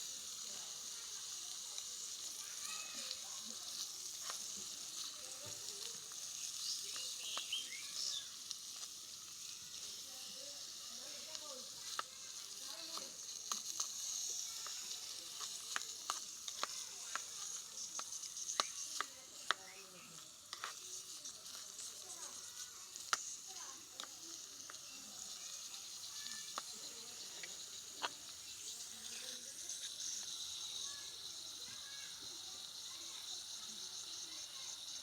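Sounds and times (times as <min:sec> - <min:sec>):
food sizzling in hot oil: 0:00.0 - 0:35.0
utensil scraping a pan: 0:20.5 - 0:23.2.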